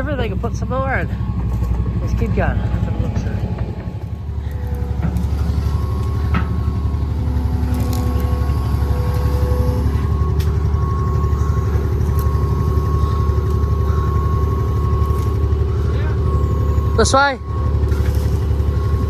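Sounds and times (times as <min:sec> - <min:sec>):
vehicle engine running: 0:00.0 - 0:19.0.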